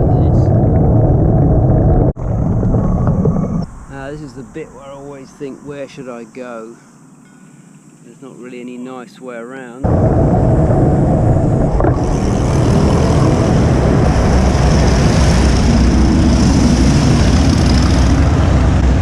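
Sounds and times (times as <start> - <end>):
wind rushing over microphone: 0.0 - 5.7, 9.8 - 19.0.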